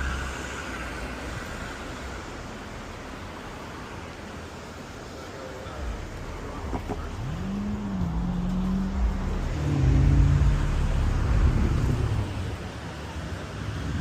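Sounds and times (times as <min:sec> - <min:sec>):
motor vehicle passing: 0:05.8 - 0:14.0.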